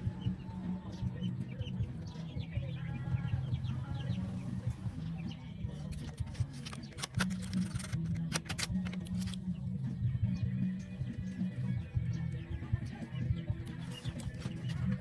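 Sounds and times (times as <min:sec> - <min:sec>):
birds chirping: 0:00.0 - 0:15.0
sharp clicks: 0:05.9 - 0:09.5.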